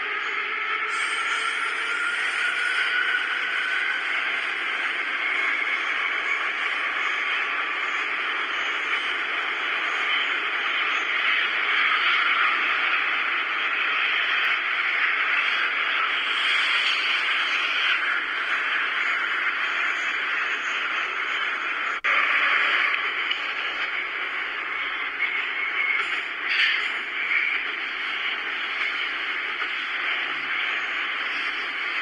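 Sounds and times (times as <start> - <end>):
metro train rushing through tunnel: 0.0 - 32.0.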